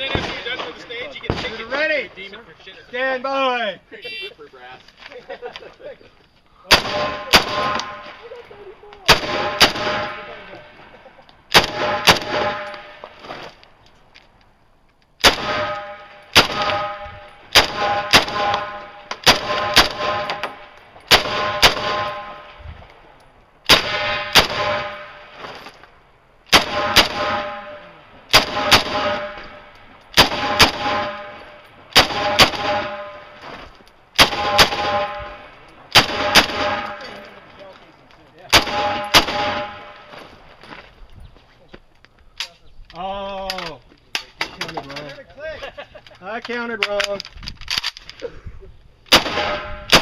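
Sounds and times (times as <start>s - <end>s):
rifle shots: 6.7s - 8.2s, 9.1s - 10.7s, 11.5s - 13.2s, 15.2s - 22.6s, 23.6s - 25.6s, 26.5s - 33.5s, 34.2s - 37.3s, 38.5s - 40.2s, 49.1s - 50.0s.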